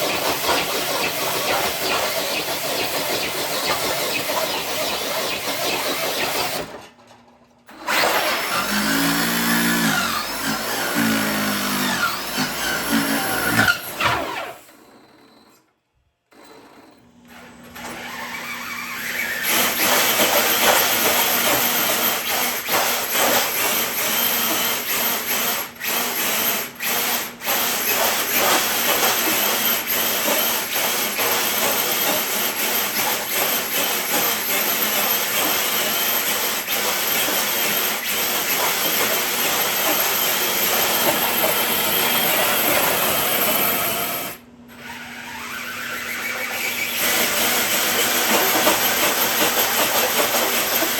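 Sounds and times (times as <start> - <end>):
toy truck motor whining: 0.0 - 6.8, 7.7 - 15.6, 16.6 - 50.9.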